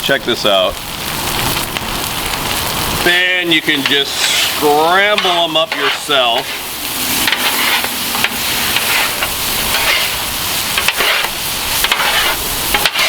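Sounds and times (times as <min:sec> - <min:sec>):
food sizzling on a griddle: 0:00.0 - 0:13.0
spatula stirring: 0:03.8 - 0:13.0.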